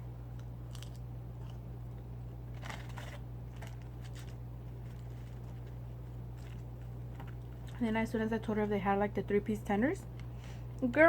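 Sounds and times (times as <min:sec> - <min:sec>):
low electrical hum: 0:00.0 - 0:11.0
crunching fried food: 0:00.3 - 0:07.8.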